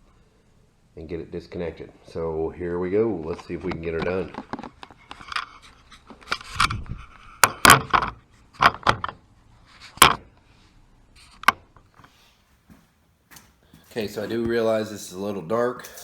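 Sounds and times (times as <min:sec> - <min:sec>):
sharp clicks and knocks on plastic: 0:10.0 - 0:10.2.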